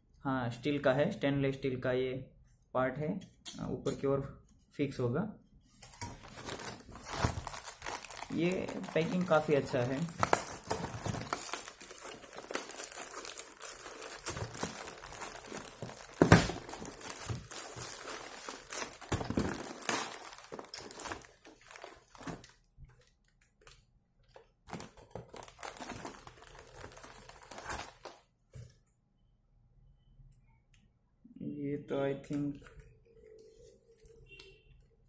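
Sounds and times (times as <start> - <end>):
plastic packaging crinkling: 5.9 - 23.8, 24.7 - 28.2.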